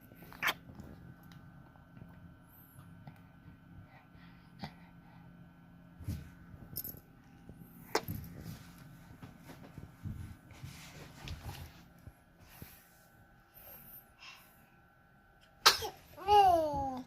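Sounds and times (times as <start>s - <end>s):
baby sneezing: 15.6s - 16.0s.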